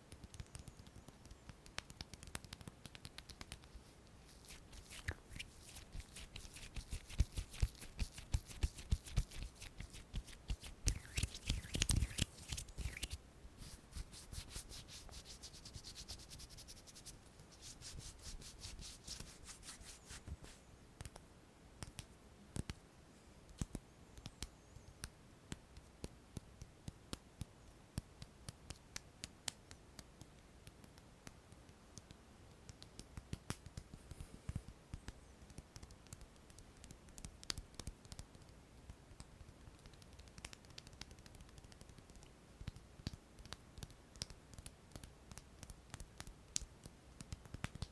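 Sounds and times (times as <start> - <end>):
hands rubbing and scratching: 0.1 - 21.2, 39.6 - 47.9.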